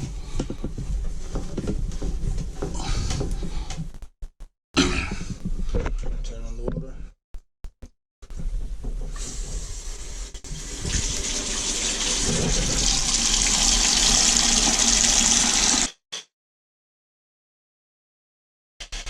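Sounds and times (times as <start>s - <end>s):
water hissing into toilet tank: 9.1s - 15.9s.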